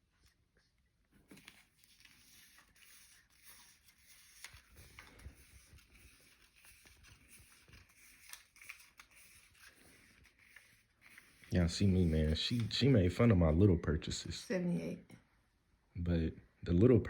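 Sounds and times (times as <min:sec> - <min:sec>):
paper money rustling: 0:01.2 - 0:13.2.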